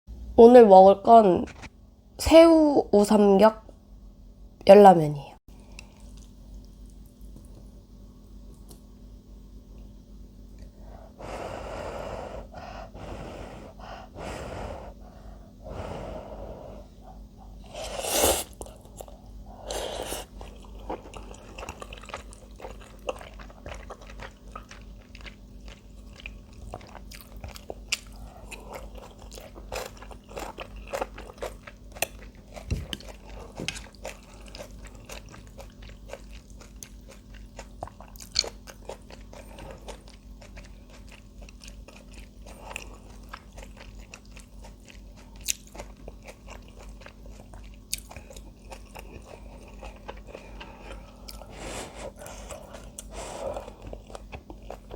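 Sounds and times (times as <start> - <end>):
close-up wet chewing: 5.6 - 7.6, 18.4 - 54.9.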